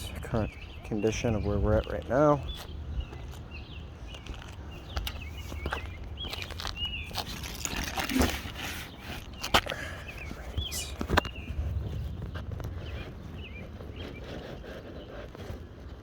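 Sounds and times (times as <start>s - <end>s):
birds chirping: 0.0s - 16.0s
sharp scuffs and knocks: 4.1s - 9.8s.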